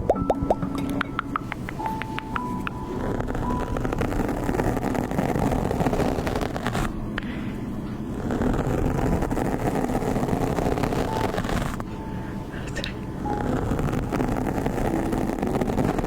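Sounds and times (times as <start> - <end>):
rising plops and clicks: 0.0 - 3.5
steady rushing noise: 0.0 - 16.0.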